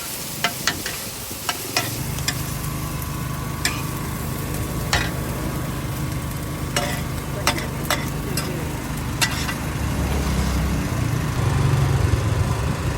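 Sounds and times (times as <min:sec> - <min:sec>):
food sizzling in a wok: 0:00.0 - 0:12.2
metal spatula clanking on wok: 0:00.4 - 0:02.4, 0:03.6 - 0:03.9, 0:06.8 - 0:08.5, 0:09.2 - 0:09.6
low rumble: 0:09.7 - 0:12.9.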